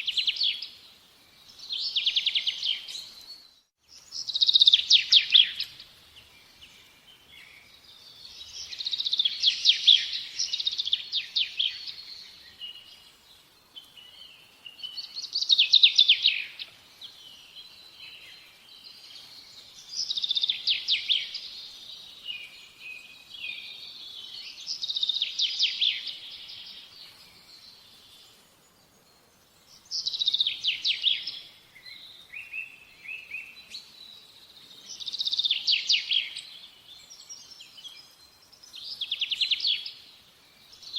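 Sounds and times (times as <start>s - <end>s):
songbird singing: 0.0s - 40.9s.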